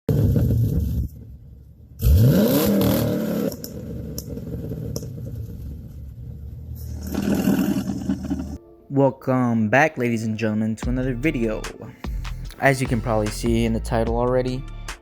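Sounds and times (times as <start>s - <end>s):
car engine revving: 0.1s - 8.6s.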